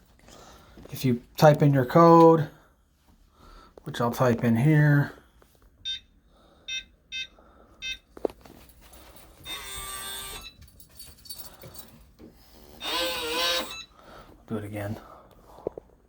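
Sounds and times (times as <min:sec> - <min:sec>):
short keypad beeps: 0:05.9 - 0:06.1, 0:06.7 - 0:08.1
small motor running: 0:09.4 - 0:10.5, 0:12.6 - 0:13.8.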